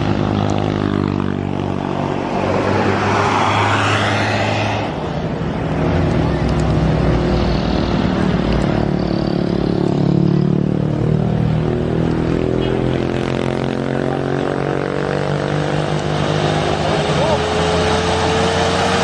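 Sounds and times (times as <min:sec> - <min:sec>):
traffic noise: 0:00.0 - 0:19.0
bus engine running under load: 0:16.2 - 0:19.0.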